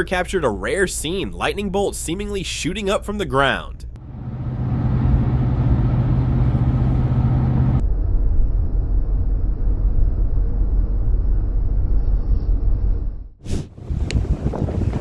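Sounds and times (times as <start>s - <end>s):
low hum: 3.9s - 15.0s
car road and engine noise: 4.0s - 7.8s
rough rumbling noise: 4.0s - 11.7s.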